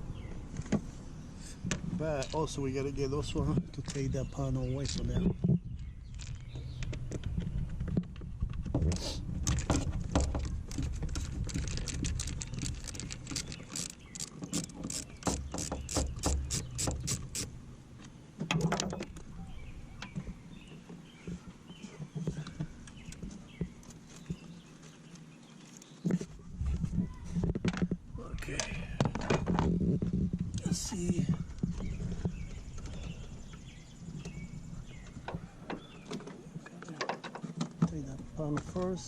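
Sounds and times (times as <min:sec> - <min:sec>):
handling tools and plastic trim: 0:03.3 - 0:17.5
screwdriver clicks and rattles: 0:09.5 - 0:17.4.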